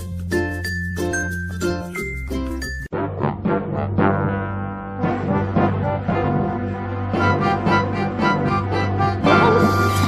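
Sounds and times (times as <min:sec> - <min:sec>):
background music with brass: 0:02.9 - 0:10.0.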